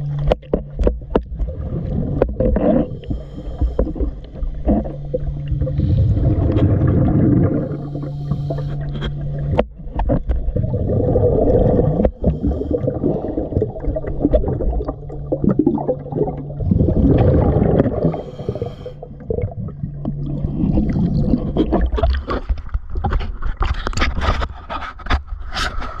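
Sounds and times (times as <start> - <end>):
exhaled bubbles gurgling: 0.0 - 24.2
low steady hum: 0.0 - 26.0
diver breathing through regulator: 2.6 - 4.9, 5.6 - 9.3, 11.4 - 13.5, 17.3 - 19.3.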